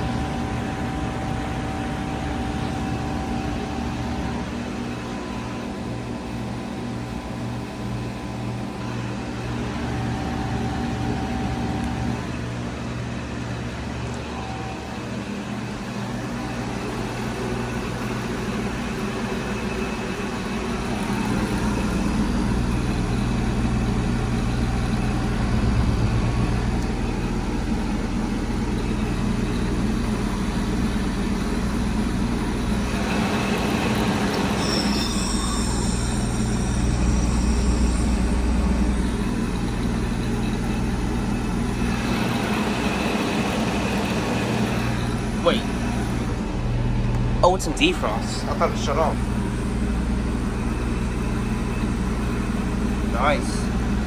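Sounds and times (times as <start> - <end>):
heat pump compressor hum: 0.0 - 54.0
high whistling hiss: 34.0 - 40.5.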